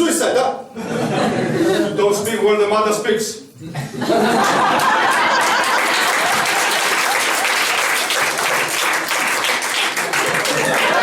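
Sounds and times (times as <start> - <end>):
audience applauding: 4.4 - 11.0.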